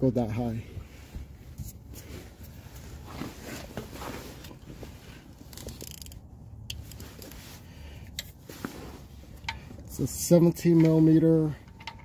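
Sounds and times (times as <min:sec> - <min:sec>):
hand tools clicking and rustling: 0:09.4 - 0:12.0.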